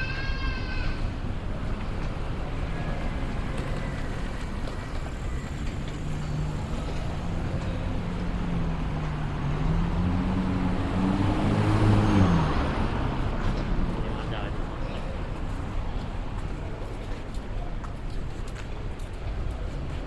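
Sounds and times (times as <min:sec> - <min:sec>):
street traffic rumble: 0:00.0 - 0:20.0
car engine pulling away: 0:05.2 - 0:14.0.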